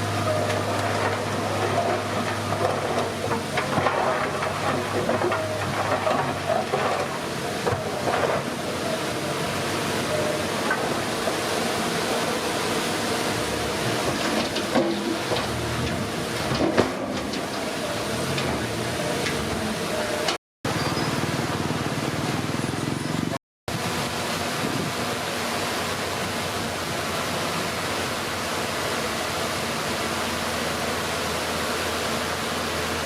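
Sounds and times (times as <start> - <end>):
bulldozer diesel engine running: 0.0 - 24.2
knocks and clatter: 1.0 - 8.5, 14.0 - 17.7.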